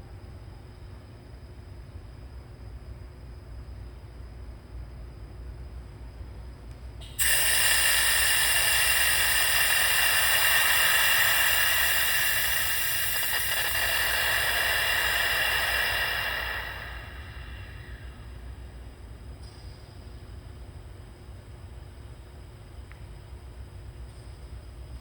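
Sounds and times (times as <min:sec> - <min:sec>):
compressed air hissing: 0:07.0 - 0:19.0.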